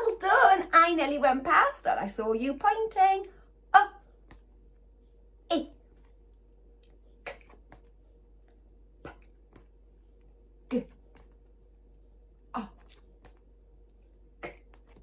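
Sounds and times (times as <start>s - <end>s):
woman saying letter sounds: 0.0s - 4.0s, 10.7s - 11.0s.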